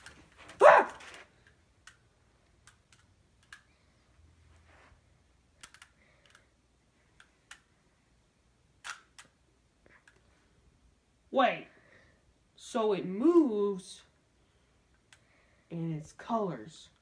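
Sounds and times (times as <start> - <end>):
puzzle cube plastic clicks: 2.6 - 3.7, 5.6 - 6.5, 8.8 - 9.4.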